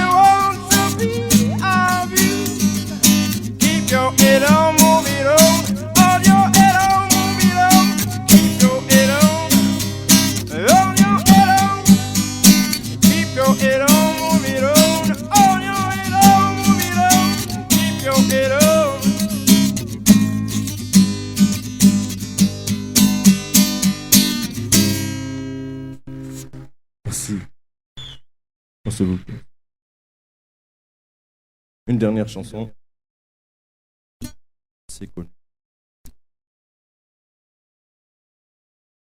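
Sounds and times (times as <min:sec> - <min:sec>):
sliding guitar melody: 0:00.0 - 0:25.9
acoustic guitar strumming: 0:00.0 - 0:26.7.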